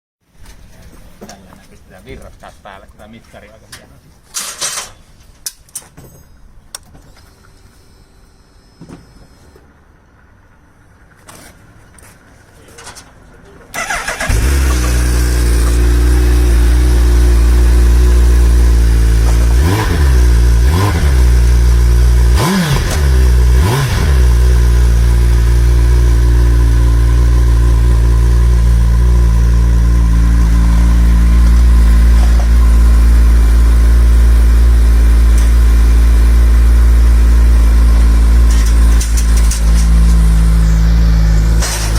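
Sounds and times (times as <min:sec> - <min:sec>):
motorcycle engine starting and idling: 0:09.2 - 0:41.9
engine revving blips: 0:13.8 - 0:24.7, 0:36.3 - 0:41.9.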